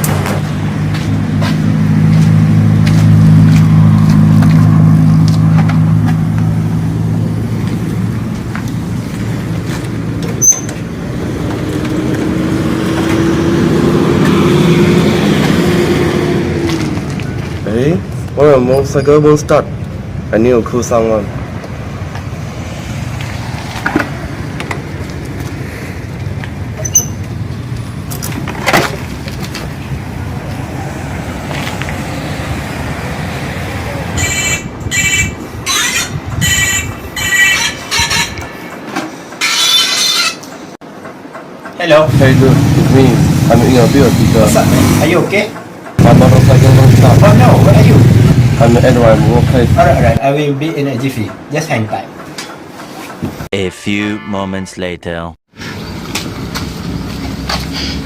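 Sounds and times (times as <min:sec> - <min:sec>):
low rumble of road traffic: 0:00.0 - 0:53.6, 0:55.1 - 0:58.0
vehicle engine running: 0:00.1 - 0:15.7, 0:46.0 - 0:50.2.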